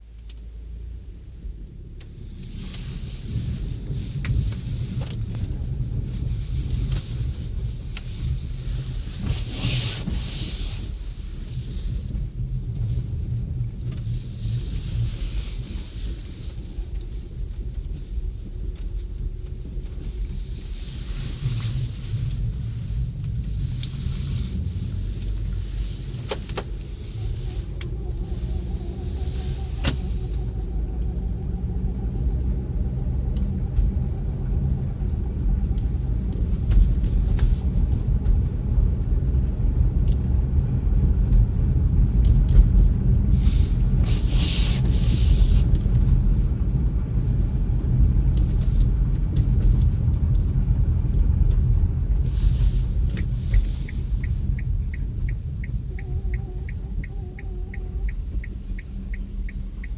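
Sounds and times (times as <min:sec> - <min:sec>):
car engine rumble: 0:00.0 - 0:59.9
faint wavering squeak: 0:27.2 - 0:32.2
light ticking: 0:53.0 - 0:59.9.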